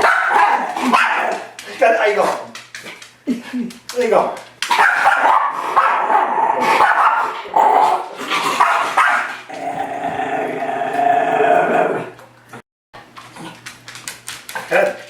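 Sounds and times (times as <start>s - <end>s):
dog barking: 0.0s - 1.5s, 4.7s - 8.0s, 8.6s - 9.4s
dog growling: 5.6s - 12.2s.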